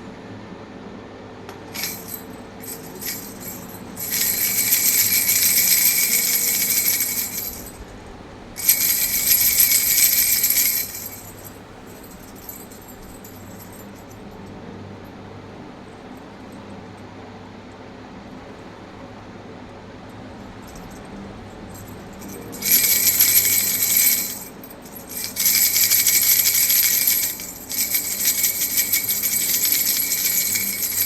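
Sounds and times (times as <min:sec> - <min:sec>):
baby rattle jingling: 0:01.7 - 0:14.1, 0:21.7 - 0:31.0.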